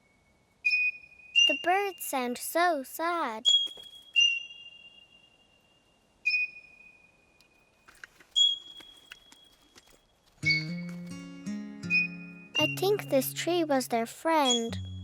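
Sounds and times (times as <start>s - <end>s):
cartoon bird whistled calls: 0.7s - 1.8s.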